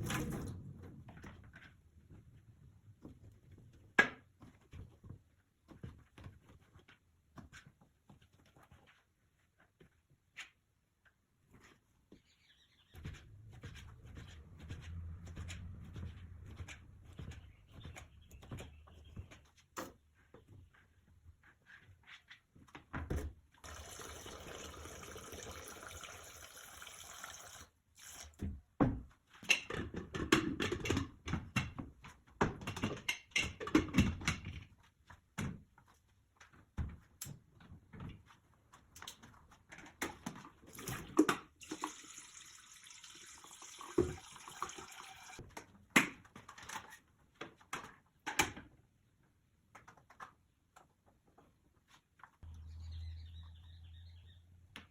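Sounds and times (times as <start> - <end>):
tap running into sink: 40.7 - 45.4.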